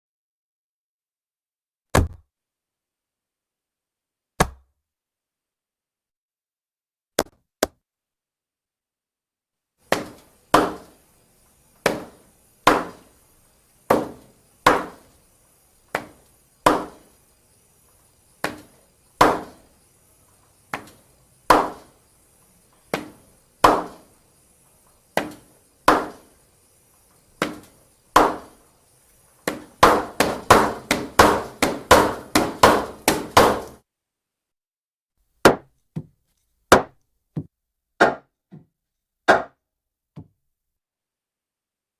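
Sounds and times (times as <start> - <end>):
rubber stamp thumping on paper: 9.9 - 11.0, 29.4 - 33.8.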